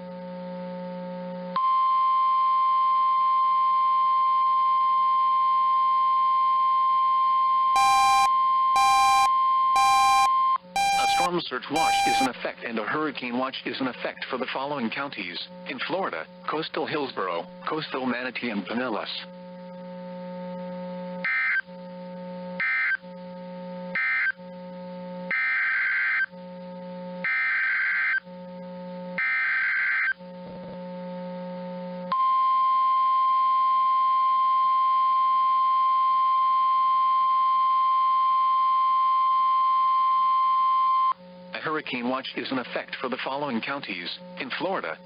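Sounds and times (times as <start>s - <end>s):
buzzing data bursts: 7.8s - 12.3s, 13.2s - 32.1s
steady alarm tone: 7.8s - 12.3s, 22.6s - 23.0s, 23.9s - 26.3s, 27.2s - 30.2s.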